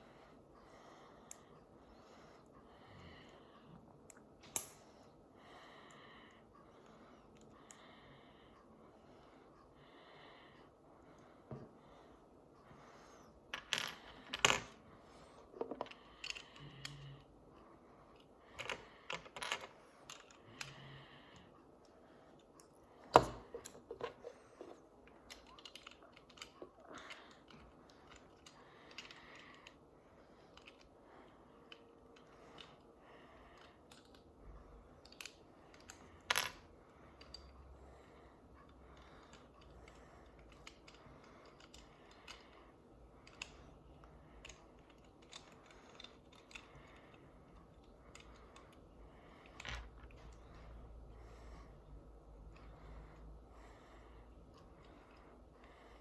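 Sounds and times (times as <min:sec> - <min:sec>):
plastic toy pieces clicking: 0:25.2 - 0:29.8, 0:30.4 - 0:30.9, 0:33.6 - 0:34.2, 0:35.0 - 0:36.6, 0:39.2 - 0:42.6, 0:43.2 - 0:50.4.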